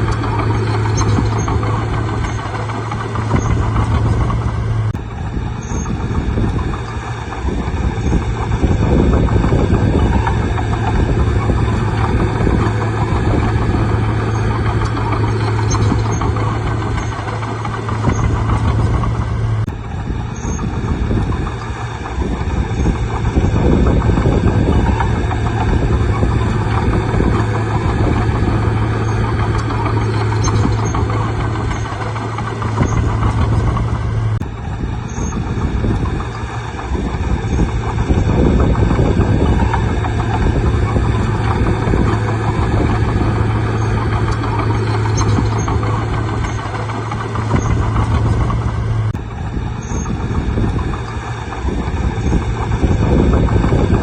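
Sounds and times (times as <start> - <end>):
bulldozer diesel engine: 0.0 - 54.0
bulldozer pushing soil: 0.0 - 54.0.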